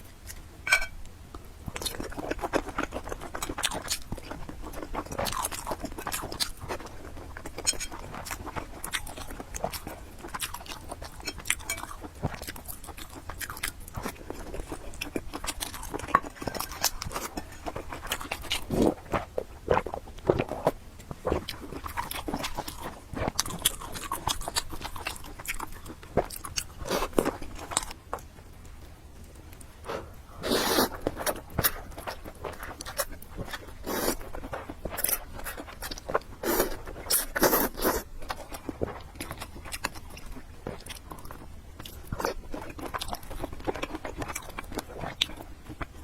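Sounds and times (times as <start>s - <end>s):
person chewing food: 0.0s - 46.0s.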